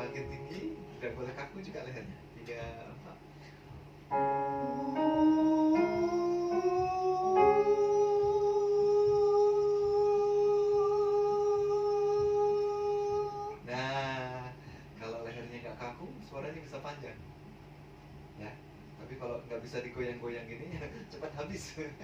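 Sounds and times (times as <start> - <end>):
person singing a held vowel: 4.2 - 13.7.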